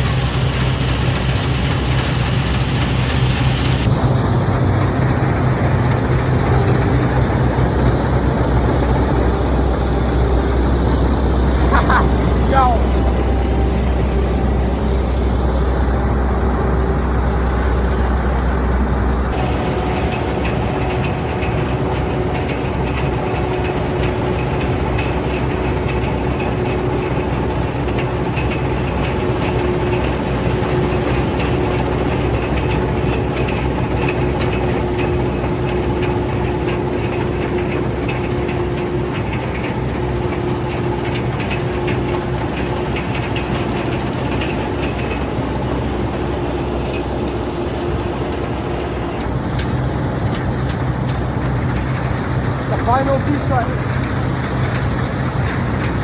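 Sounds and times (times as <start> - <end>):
diesel engine droning: 0.0 - 56.0
heavy low rumble: 0.0 - 56.0
machinery rattling: 0.0 - 56.0.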